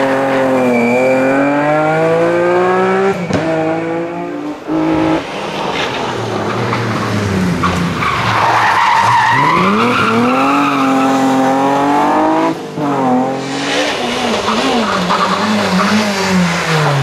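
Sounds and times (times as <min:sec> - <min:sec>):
car engine revving hard: 0:00.0 - 0:05.3, 0:09.2 - 0:17.0.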